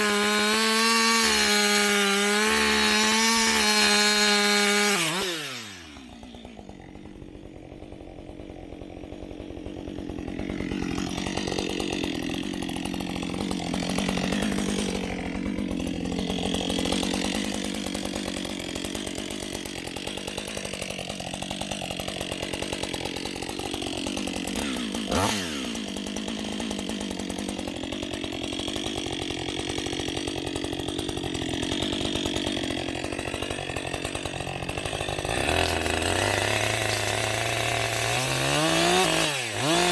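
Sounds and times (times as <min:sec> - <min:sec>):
chainsaw cutting tree: 0:00.0 - 0:39.9.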